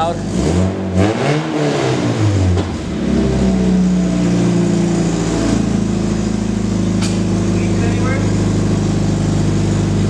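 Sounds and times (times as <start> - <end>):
car engine idling: 2.4 - 10.0.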